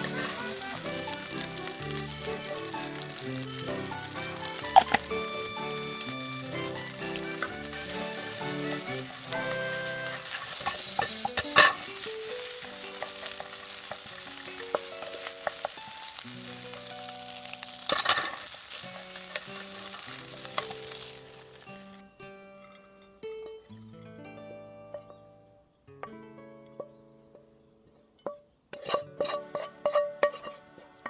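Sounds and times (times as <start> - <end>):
utensil knocking on pan: 0.0 - 15.8, 28.3 - 30.6
rice sizzling in a frying pan: 0.0 - 22.1, 28.7 - 31.0
background music: 0.0 - 27.8, 28.9 - 31.0.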